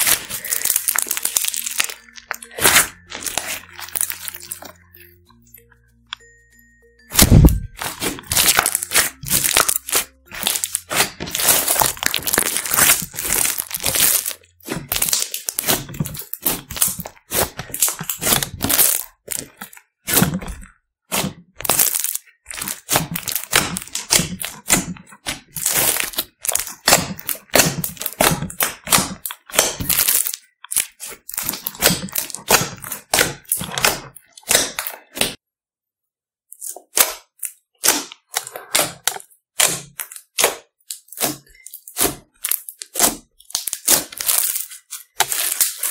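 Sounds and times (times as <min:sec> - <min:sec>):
slime squished by hand crackling: 0:07.1 - 0:35.4.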